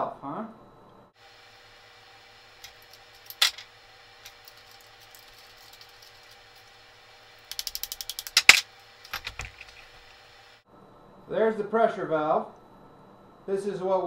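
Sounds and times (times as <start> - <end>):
metal parts and tool clicking: 2.6 - 6.7, 7.5 - 10.0
ratchet-like clicks: 7.5 - 9.2.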